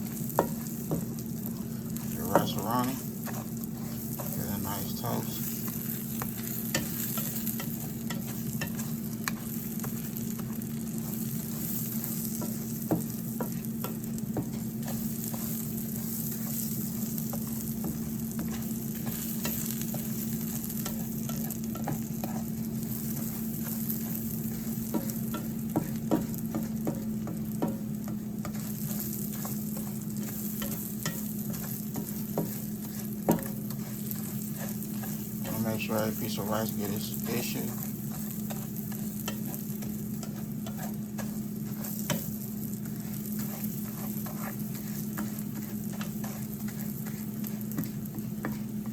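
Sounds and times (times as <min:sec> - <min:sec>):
rice sizzling in a pan: 0:00.0 - 0:48.9
steady low hum: 0:00.0 - 0:48.9
utensil clicking against pan: 0:38.1 - 0:43.6.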